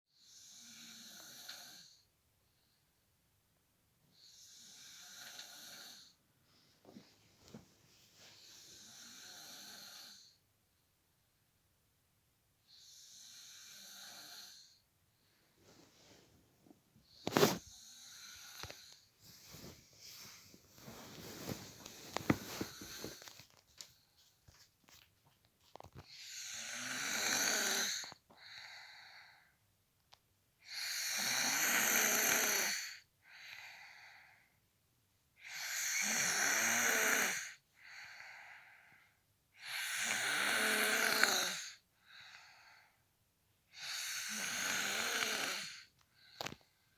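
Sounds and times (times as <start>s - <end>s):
man snoring: 0.2s - 2.0s, 4.3s - 6.2s, 8.5s - 10.4s, 12.8s - 14.8s, 17.3s - 18.9s, 26.2s - 28.2s, 30.7s - 33.0s, 35.4s - 37.6s, 39.6s - 41.8s, 43.8s - 45.9s
faint irregular breathing: 12.8s - 25.0s, 25.6s - 29.7s, 32.6s - 34.6s, 37.3s - 39.3s, 40.1s - 43.1s, 43.8s - 46.9s.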